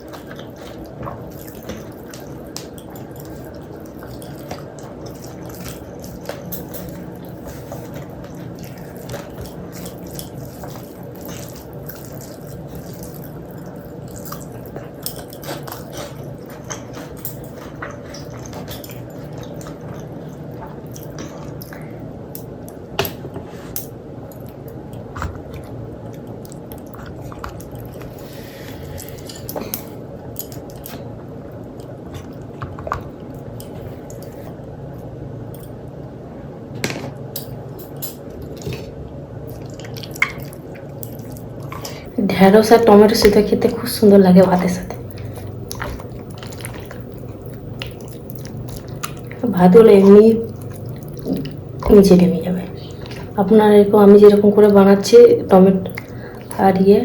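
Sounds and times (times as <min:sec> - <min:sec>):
wet chewing: 0:00.0 - 0:35.7, 0:37.4 - 0:57.0
low background hum: 0:00.0 - 0:57.0.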